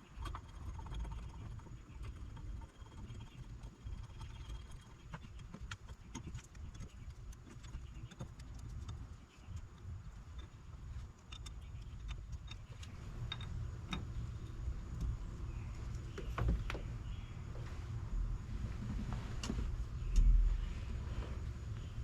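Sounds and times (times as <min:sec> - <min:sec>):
light metallic clicks and rattles: 0:00.0 - 0:17.2
low handling rumble: 0:09.0 - 0:22.0.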